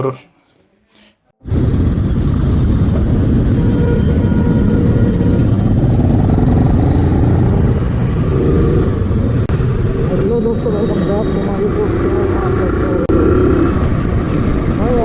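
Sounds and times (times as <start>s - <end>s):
wind and road noise: 1.4s - 15.0s
motorcycle engine running: 1.5s - 10.2s.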